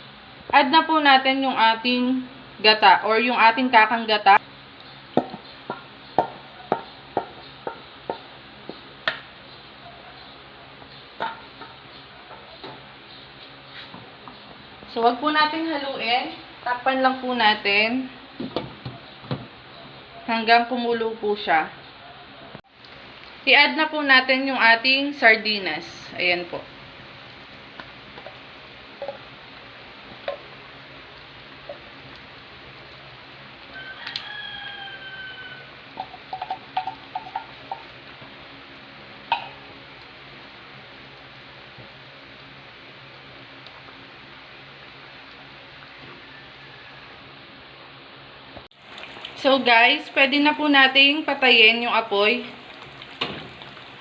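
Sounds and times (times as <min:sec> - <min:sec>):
utensil knocking against cookware: 0:05.2 - 0:08.3, 0:36.0 - 0:37.9
stew simmering in a pan: 0:26.6 - 0:47.4, 0:48.7 - 0:54.0.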